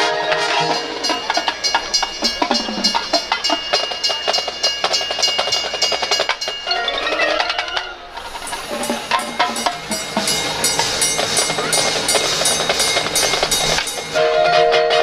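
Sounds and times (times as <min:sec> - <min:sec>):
marching band playing: 0:00.0 - 0:03.8
ringing mallet notes: 0:00.0 - 0:14.5
percussion sharp strikes: 0:00.0 - 0:15.0.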